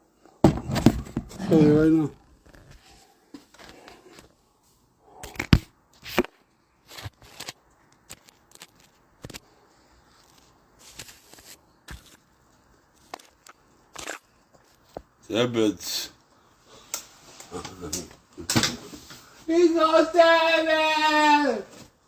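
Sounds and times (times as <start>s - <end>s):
knocks and clattering handling: 0.4s - 1.9s.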